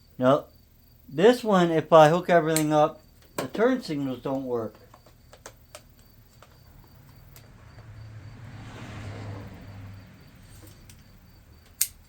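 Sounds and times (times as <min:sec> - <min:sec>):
faint clicks: 0:04.7 - 0:07.9
vehicle passing by: 0:06.1 - 0:12.0.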